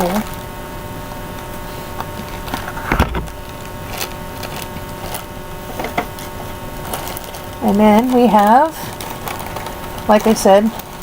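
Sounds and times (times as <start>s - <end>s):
loud knock: 2.6s - 3.5s.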